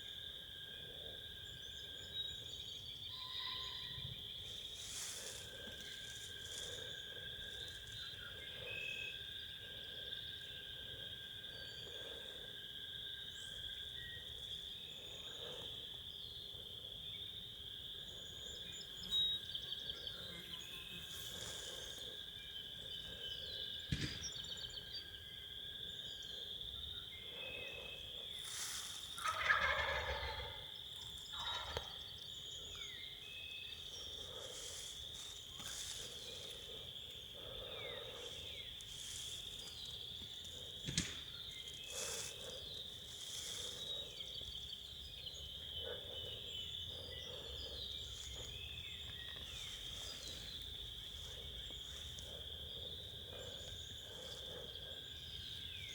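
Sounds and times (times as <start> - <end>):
turkeys gobbling: 28.5 - 30.6, 31.3 - 32.0.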